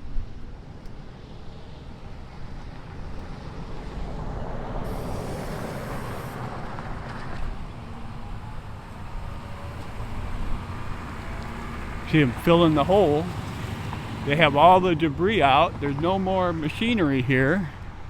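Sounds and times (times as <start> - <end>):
low traffic rumble: 0.0 - 18.0
vehicle passing: 2.0 - 18.0.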